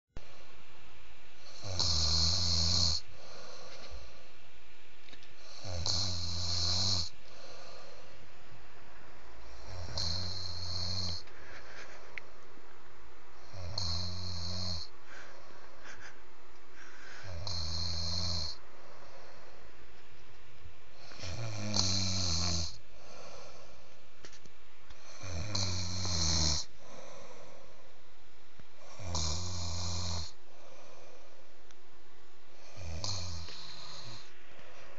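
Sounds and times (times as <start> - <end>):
man snoring heavily: 1.4 - 3.7, 5.4 - 8.0, 9.4 - 11.3, 13.4 - 15.4, 17.2 - 19.4, 21.0 - 23.7, 25.0 - 27.7, 28.8 - 31.0, 32.5 - 34.4.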